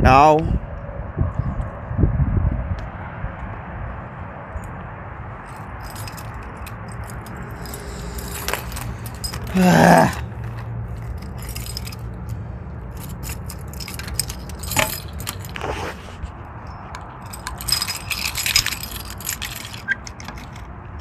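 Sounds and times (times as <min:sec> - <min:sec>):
steady low hum: 0:03.8 - 0:15.5
keys jangling: 0:05.4 - 0:15.8, 0:16.6 - 0:21.0.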